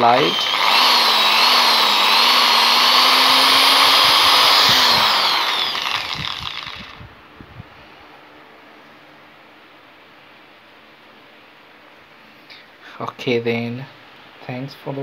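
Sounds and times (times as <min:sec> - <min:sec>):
impact drill whining and winding down: 0:00.0 - 0:07.0
light clicks of drill stopping: 0:00.3 - 0:07.0.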